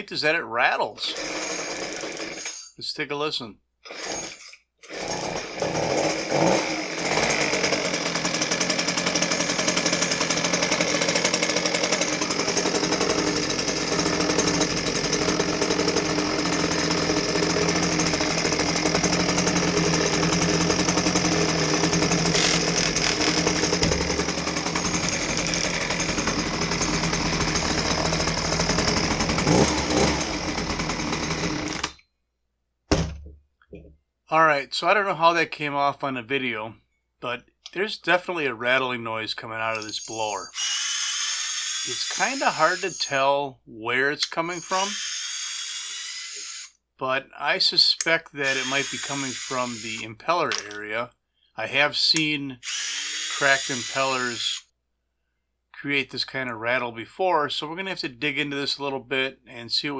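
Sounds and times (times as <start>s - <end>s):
leaf blower engine rattling: 1.0s - 2.6s, 3.9s - 32.0s, 39.6s - 43.2s, 48.4s - 51.0s, 52.6s - 54.5s.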